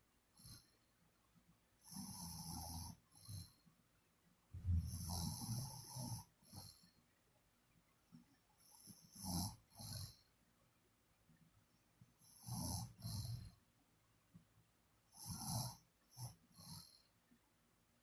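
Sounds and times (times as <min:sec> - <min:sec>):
person snoring: 0:04.6 - 0:06.8, 0:12.3 - 0:13.5, 0:15.2 - 0:17.0.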